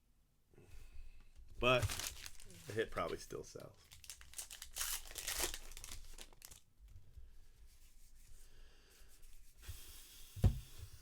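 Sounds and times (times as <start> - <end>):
wrapper rustling: 1.6 - 6.7
wrappers crinkling and tearing: 1.6 - 6.7.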